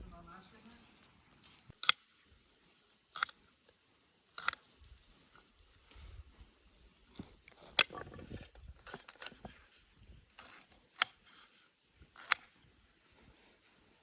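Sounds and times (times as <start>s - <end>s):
sharp snips: 1.4s - 2.0s, 4.4s - 4.6s, 10.3s - 11.5s, 12.2s - 12.6s.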